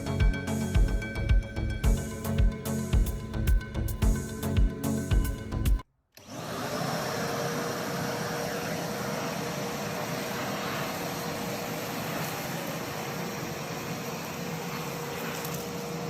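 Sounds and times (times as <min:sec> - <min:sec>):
background music with a beat: 0:00.0 - 0:05.8
vacuum cleaner running: 0:06.2 - 0:16.0.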